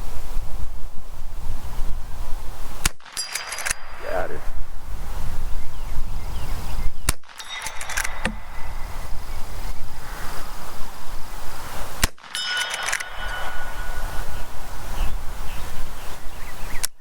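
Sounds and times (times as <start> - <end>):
rifle shot: 2.8 - 4.2, 7.1 - 9.3, 12.0 - 14.6
rifle lever clicks: 7.1 - 8.4
metallic ringing clang: 7.3 - 9.3, 12.2 - 15.1.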